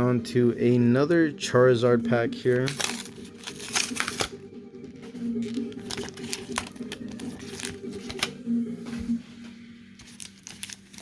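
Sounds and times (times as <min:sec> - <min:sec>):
steady low hum: 0:00.0 - 0:10.4
foil wrapper crinkling and tearing: 0:02.6 - 0:04.4, 0:05.4 - 0:08.3, 0:10.0 - 0:11.0.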